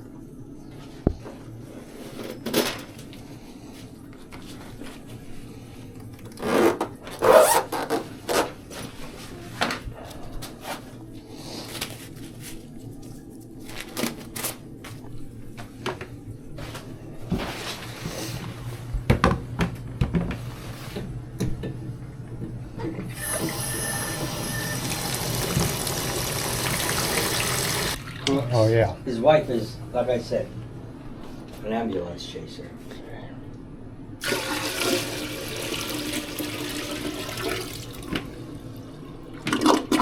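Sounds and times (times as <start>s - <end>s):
steady low hum: 8.8s - 34.2s.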